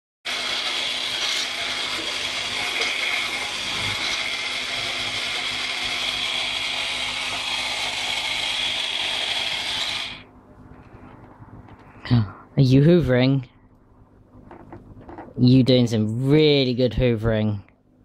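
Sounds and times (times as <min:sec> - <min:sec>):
toy vacuum motor whirring: 0:00.3 - 0:10.2.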